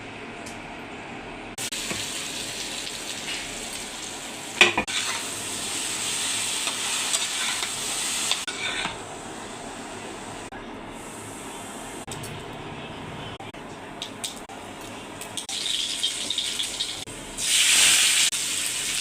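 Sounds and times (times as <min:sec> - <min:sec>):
food sizzling in a pan: 0:01.6 - 0:09.0, 0:15.5 - 0:19.0.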